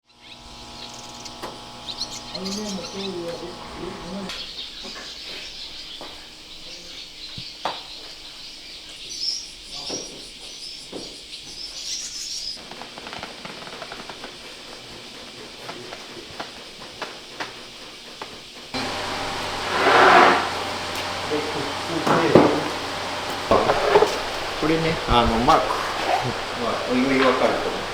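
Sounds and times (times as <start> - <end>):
birds chirping: 0.1 - 12.6, 18.8 - 27.9
light knocks: 18.8 - 27.9.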